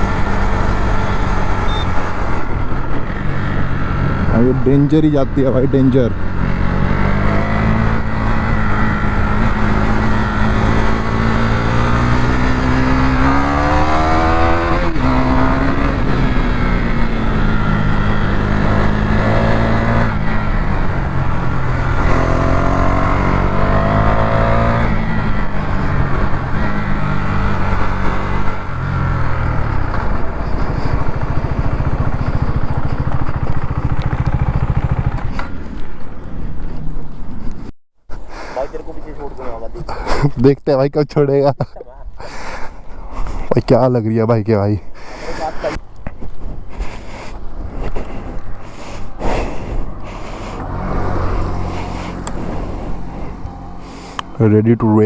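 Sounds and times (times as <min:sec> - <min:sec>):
motorcycle engine accelerating: 0:00.0 - 0:37.7, 0:45.0 - 0:55.0
wind rush: 0:45.4 - 0:54.4.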